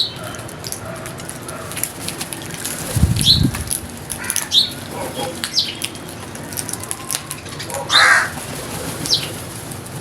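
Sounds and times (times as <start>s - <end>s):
birds chirping: 4.2s - 9.6s.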